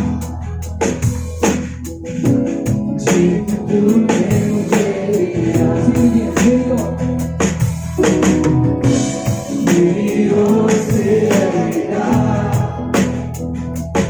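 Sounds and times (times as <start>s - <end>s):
instrumental accompaniment: 0.0s - 14.0s
group of voices singing: 3.0s - 7.8s, 9.2s - 13.6s.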